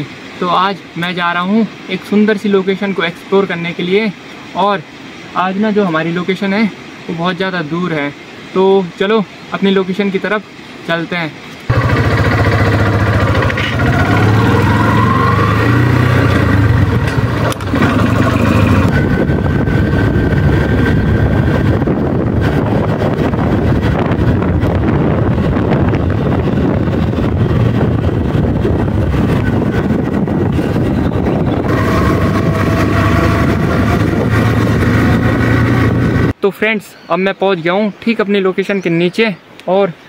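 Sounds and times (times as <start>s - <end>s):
motorcycle engine accelerating: 11.7s - 36.3s.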